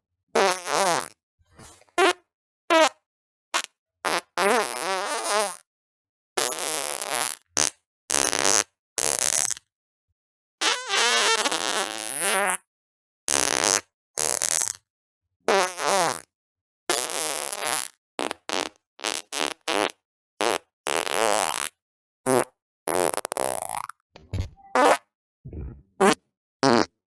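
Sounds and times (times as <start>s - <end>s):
fart sounds: 24.2s - 26.9s.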